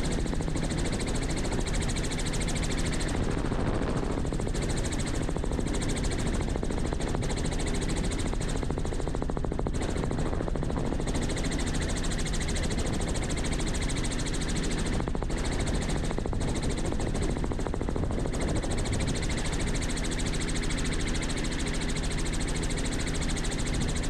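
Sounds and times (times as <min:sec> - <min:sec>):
piston engine drone: 0:00.0 - 0:01.0
helicopter rotor beating: 0:00.0 - 0:01.6.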